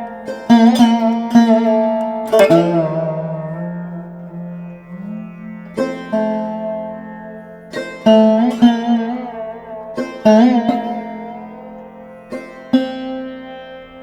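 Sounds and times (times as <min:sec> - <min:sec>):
plucked string notes: 0:00.0 - 0:14.0.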